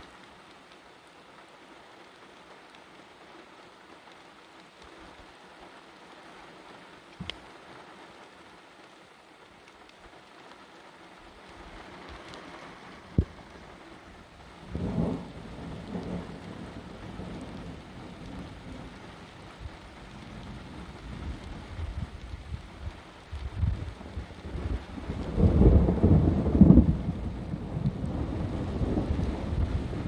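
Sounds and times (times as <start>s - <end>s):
steady rain falling: 0.0s - 30.0s
thunder rumbling: 13.1s - 30.0s.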